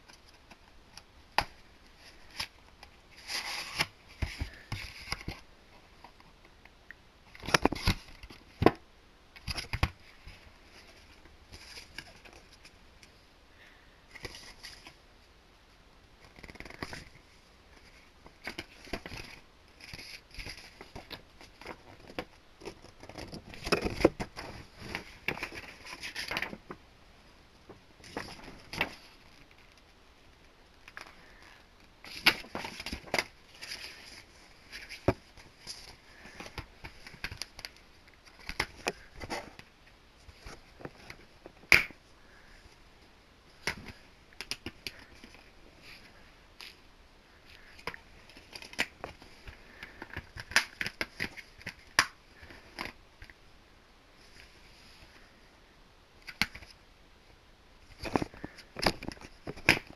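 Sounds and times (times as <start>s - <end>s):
dvd packaging handling clicks: 47.8s - 53.4s, 56.2s - 56.8s, 58.0s - 59.9s.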